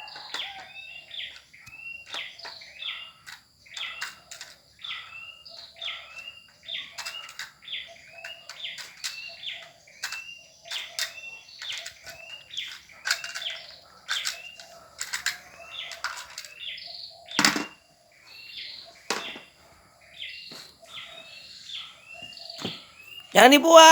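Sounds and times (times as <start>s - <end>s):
bird chirping: 0.0s - 14.6s.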